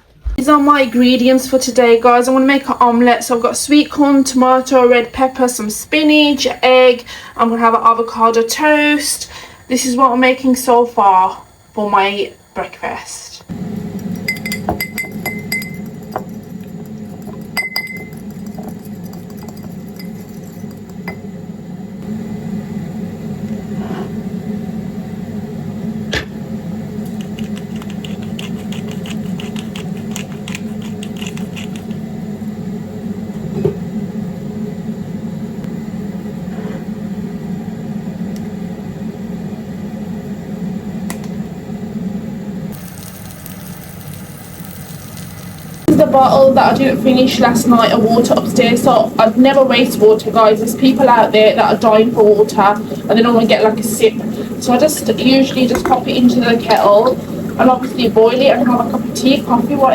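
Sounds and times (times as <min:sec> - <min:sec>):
low appliance hum: 0:00.0 - 0:59.9
glass and dishes clinking: 0:14.2 - 0:16.3, 0:17.6 - 0:18.2.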